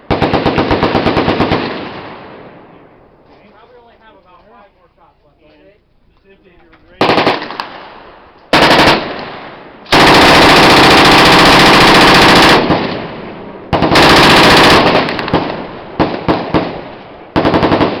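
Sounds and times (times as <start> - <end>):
machine gun firing bursts: 0.1 - 2.1, 7.0 - 7.9, 8.5 - 18.0.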